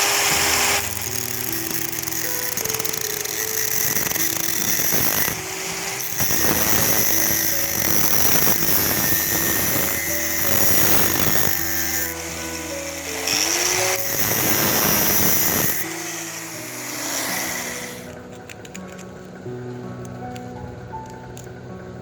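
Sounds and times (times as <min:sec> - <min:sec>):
electric power tool running: 0:00.0 - 0:18.2.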